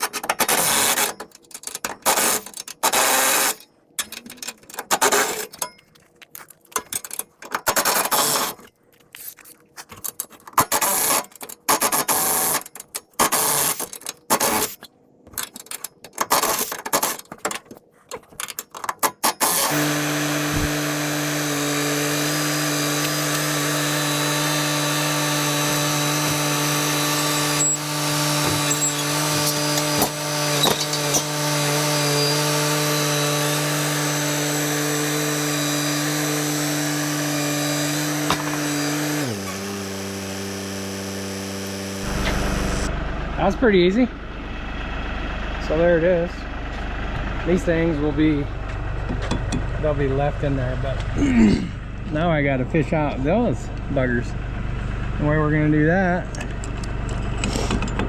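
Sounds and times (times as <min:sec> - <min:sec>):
power drill bursts: 0:02.1 - 0:03.6, 0:07.8 - 0:08.6, 0:10.8 - 0:12.6, 0:13.2 - 0:14.8, 0:19.2 - 0:42.9
steady machine hum: 0:19.6 - 0:31.1, 0:38.3 - 0:57.4.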